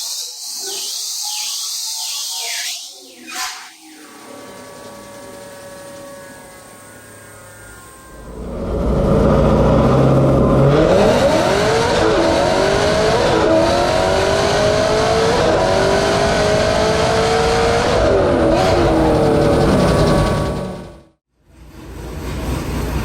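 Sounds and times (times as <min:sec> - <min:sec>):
sports car engine revving: 0:04.4 - 0:21.1.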